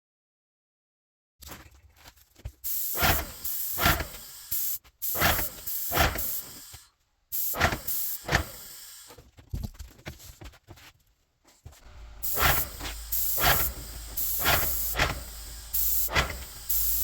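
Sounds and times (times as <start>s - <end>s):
paint sprayer hissing: 2.6s - 9.2s, 11.8s - 17.0s.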